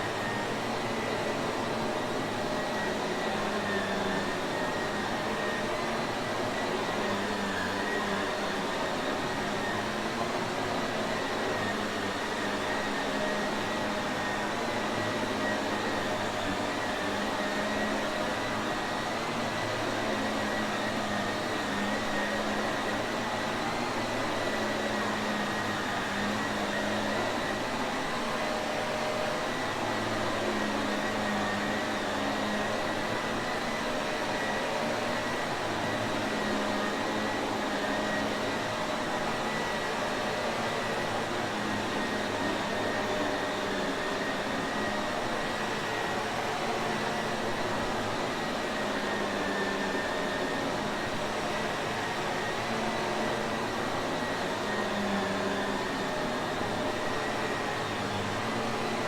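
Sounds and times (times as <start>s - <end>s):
vacuum cleaner running: 0.0s - 59.0s.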